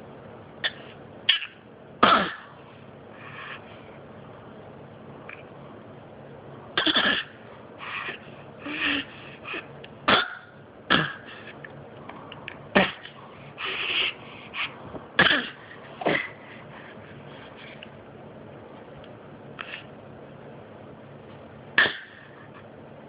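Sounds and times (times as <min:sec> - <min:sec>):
person coughing: 0:00.6 - 0:02.5, 0:06.8 - 0:07.4, 0:10.1 - 0:11.5, 0:12.8 - 0:13.2, 0:15.2 - 0:16.4, 0:21.8 - 0:22.5.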